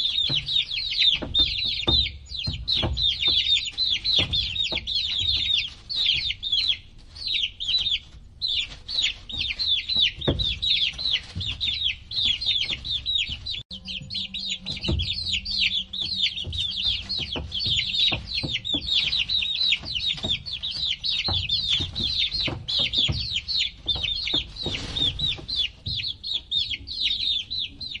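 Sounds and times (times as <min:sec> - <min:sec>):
baby chicks peeping: 0:00.0 - 0:28.0
soft knocks: 0:09.3 - 0:26.3.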